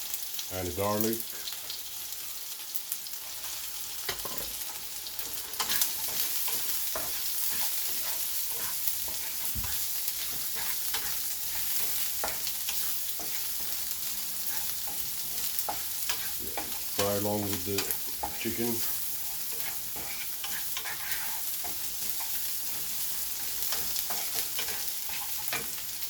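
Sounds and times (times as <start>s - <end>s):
food sizzling in hot oil: 0.0s - 26.0s
utensil scraping a pan: 5.2s - 26.0s.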